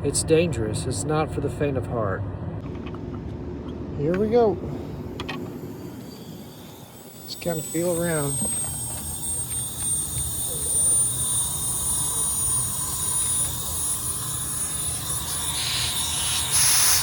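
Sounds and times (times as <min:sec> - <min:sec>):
gas hissing from a leak: 0:04.7 - 0:17.0
thin high whistle: 0:04.8 - 0:17.0.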